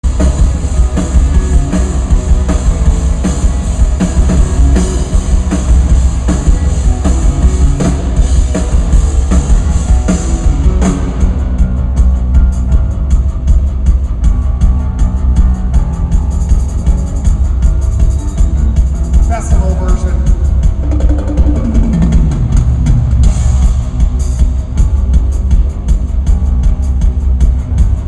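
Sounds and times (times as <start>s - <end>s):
heavy booming bass: 0.0s - 28.0s
rock band playing loud: 0.0s - 28.0s.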